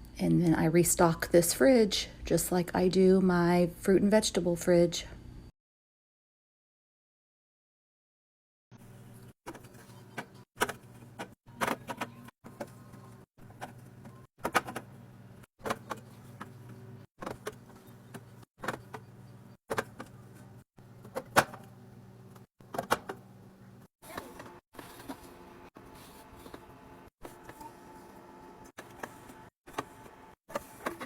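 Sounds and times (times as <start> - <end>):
refrigerator hum: 8.8 - 31.0.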